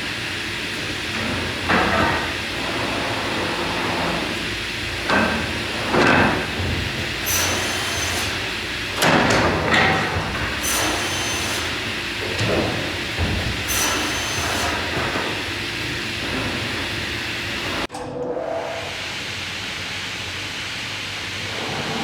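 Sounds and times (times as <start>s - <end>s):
saw machine drone: 0.0s - 17.9s
saw cutting timber: 7.1s - 8.6s, 10.6s - 12.1s, 13.5s - 16.0s.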